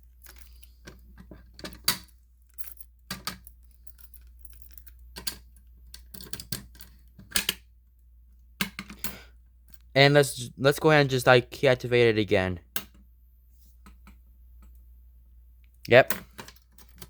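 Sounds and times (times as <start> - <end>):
keys jangling: 2.4 - 5.4.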